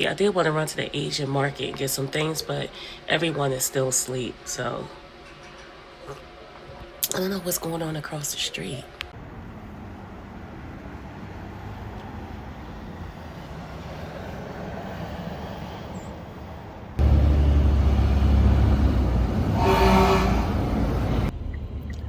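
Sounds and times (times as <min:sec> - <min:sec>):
low background hum: 0:00.0 - 0:10.3
horn sounding: 0:17.0 - 0:21.3
loud deep rumble: 0:17.0 - 0:21.4.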